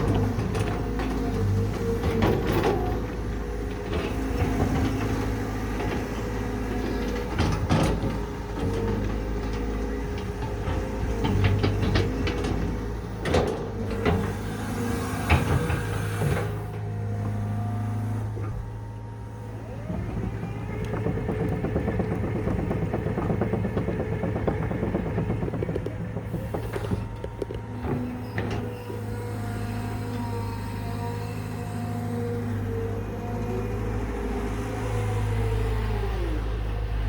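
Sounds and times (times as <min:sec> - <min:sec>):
metallic clanks and knocks: 0:00.0 - 0:14.4, 0:19.7 - 0:29.1
excavator diesel engine running: 0:00.0 - 0:37.0.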